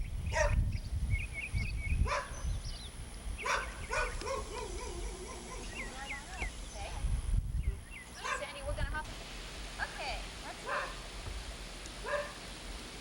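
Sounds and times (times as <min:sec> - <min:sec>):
birds chirping: 0:00.0 - 0:08.7
wind rumbling on microphone: 0:00.0 - 0:09.1
animal calling: 0:03.4 - 0:06.8.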